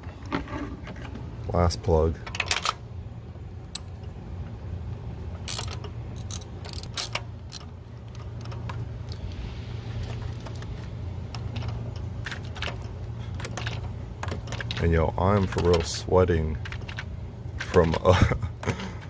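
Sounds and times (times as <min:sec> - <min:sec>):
low hum: 0:00.0 - 0:19.0
ratchet wrench clicking: 0:03.6 - 0:04.0, 0:05.4 - 0:09.2.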